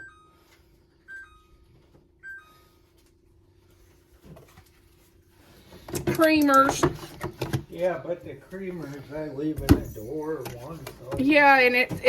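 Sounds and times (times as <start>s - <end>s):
refrigerator alarm beeping: 0.0s - 3.7s.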